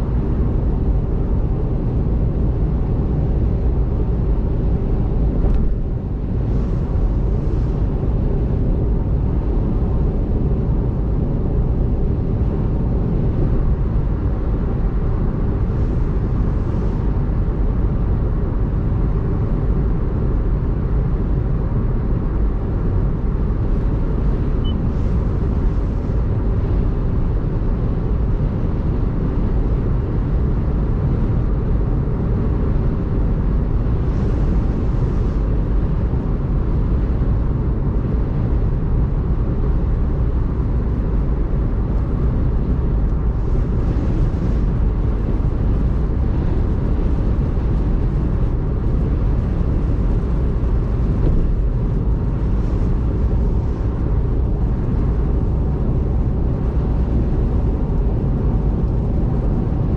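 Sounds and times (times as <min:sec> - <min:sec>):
faint hiss of wet road: 0:34.0 - 0:35.7, 0:41.9 - 0:59.5.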